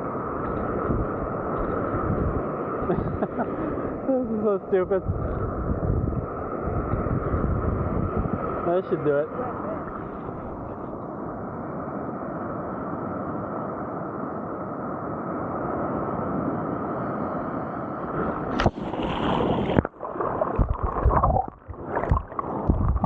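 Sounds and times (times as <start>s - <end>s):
ocean surf washing: 0.0s - 23.0s
wave surging in: 0.0s - 23.0s
water splashing and knocks: 18.5s - 23.0s.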